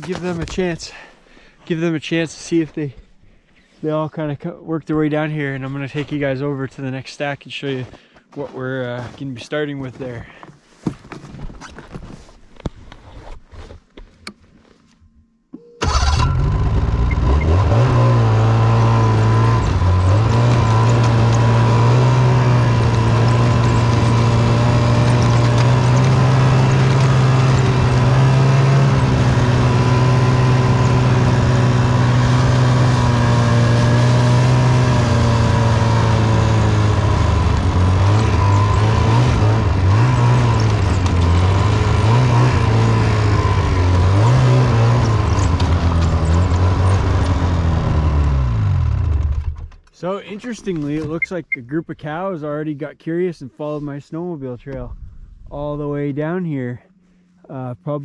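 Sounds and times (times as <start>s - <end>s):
snowmobile engine running: 15.9s - 49.6s.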